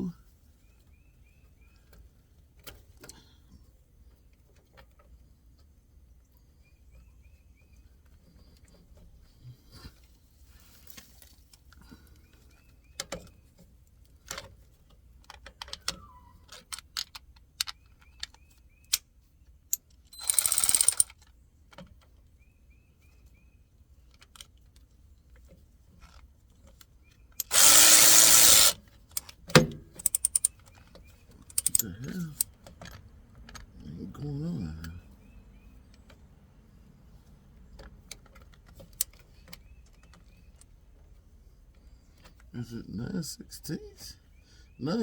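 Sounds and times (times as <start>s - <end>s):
metallic clicks of hand tools: 19.7s - 21.2s, 27.4s - 30.8s, 31.5s - 33.6s.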